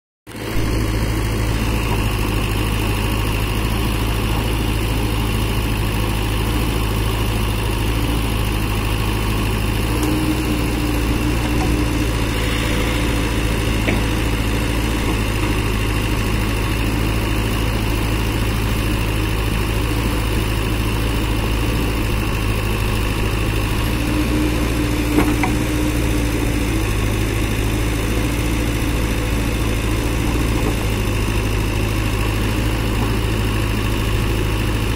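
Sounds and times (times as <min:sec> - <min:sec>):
diesel engine running: 0:00.3 - 0:34.9
higher steady tone: 0:10.4 - 0:17.2.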